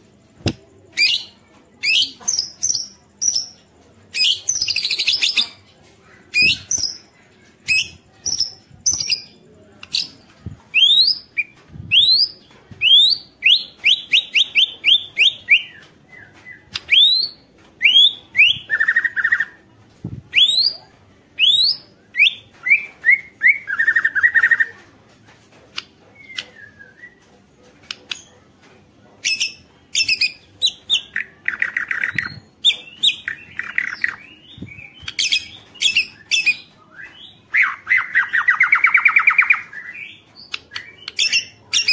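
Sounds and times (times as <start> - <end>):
bird singing whistled notes: 20.3 - 20.8.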